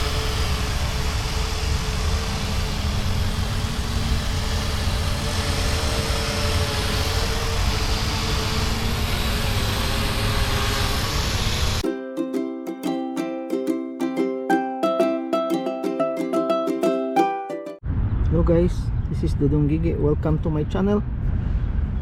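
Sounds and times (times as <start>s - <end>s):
heavy low rumble: 0.0s - 11.8s, 17.8s - 22.0s
motor hum: 0.0s - 11.8s.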